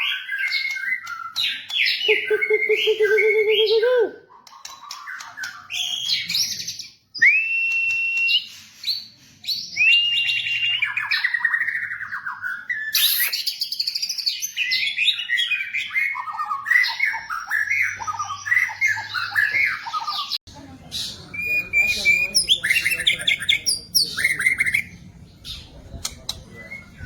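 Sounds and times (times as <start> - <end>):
songbird singing whistles: 0.0 - 4.0, 5.4 - 20.4.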